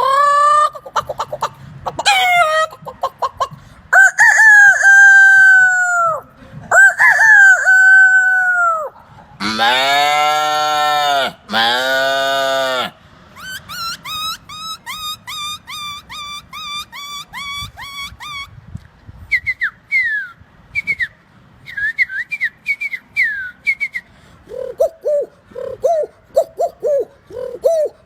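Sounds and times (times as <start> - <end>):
whistled bird-like chirps: 13.4 - 18.5, 19.3 - 24.1.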